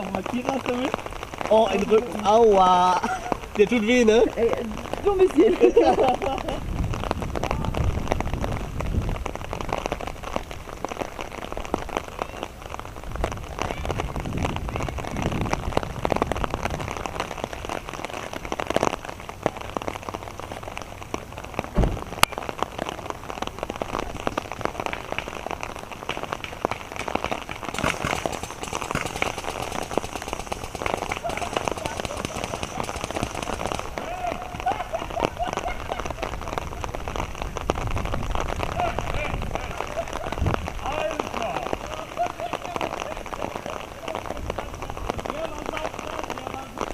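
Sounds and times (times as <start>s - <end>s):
rain falling: 0.0s - 46.9s
sharp cracks: 23.8s - 38.8s.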